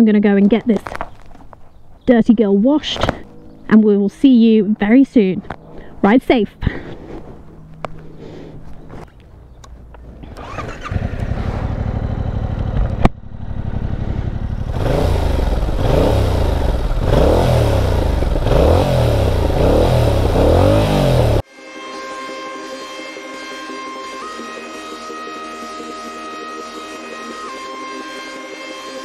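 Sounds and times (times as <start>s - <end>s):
motorcycle engine revving: 10.2s - 21.4s
sharp exhaust crack: 10.2s - 21.4s.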